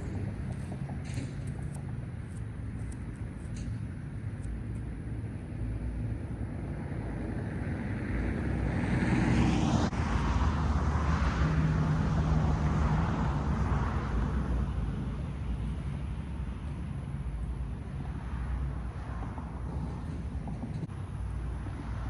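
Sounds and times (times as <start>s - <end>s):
vehicle driving past: 5.7s - 22.0s.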